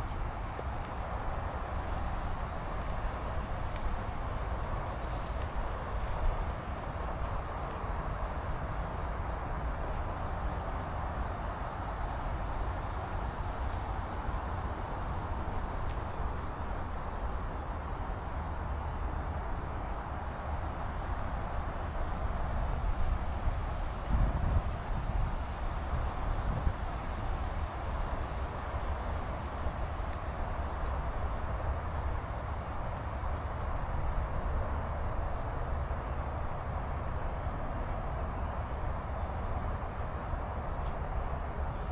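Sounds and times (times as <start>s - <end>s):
steady rushing hiss: 0.0s - 6.7s
wind buffeting microphone: 21.7s - 28.2s.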